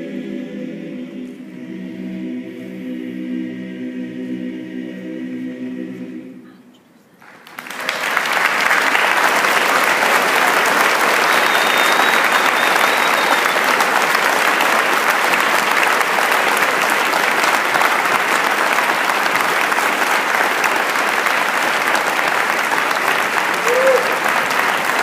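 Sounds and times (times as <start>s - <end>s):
large audience applauding: 7.2s - 25.0s.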